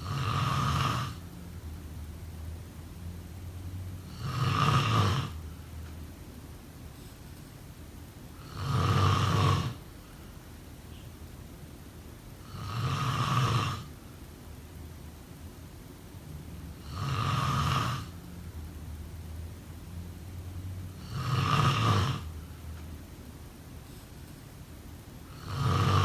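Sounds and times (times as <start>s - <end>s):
person snoring: 0.0s - 1.2s, 4.1s - 5.4s, 8.4s - 9.8s, 12.4s - 13.9s, 16.8s - 18.2s, 21.0s - 22.4s, 25.3s - 26.0s
faint breathing: 9.8s - 10.6s.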